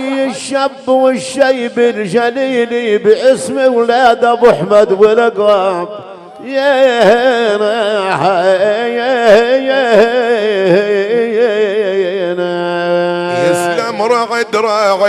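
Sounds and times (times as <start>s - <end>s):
ornamented vocal melody: 6.1s - 14.5s.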